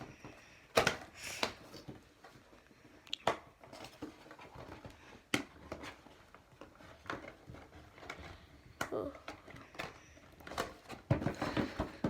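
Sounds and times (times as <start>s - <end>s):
cardboard rustling: 3.6s - 12.0s.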